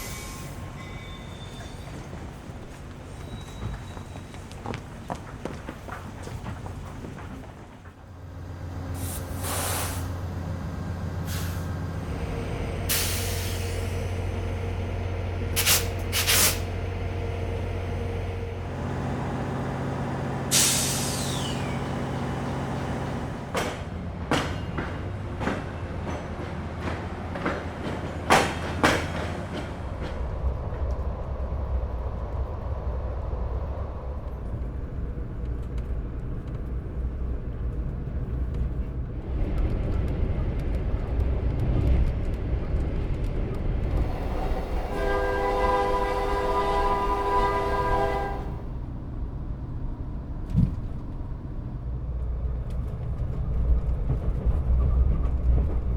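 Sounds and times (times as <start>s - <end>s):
train mechanical hum: 0.0s - 55.9s
air-brake hisses: 9.0s - 10.2s, 12.9s - 14.0s, 15.6s - 16.7s, 20.5s - 21.9s.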